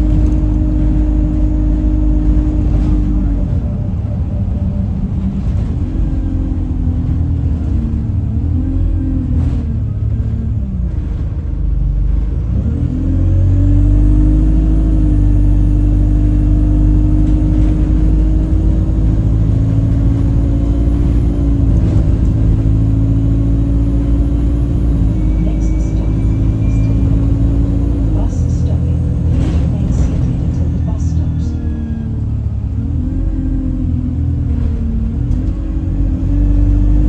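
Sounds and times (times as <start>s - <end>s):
bus engine and road rumble: 0.0s - 37.0s
horn-like humming tone: 24.4s - 31.5s.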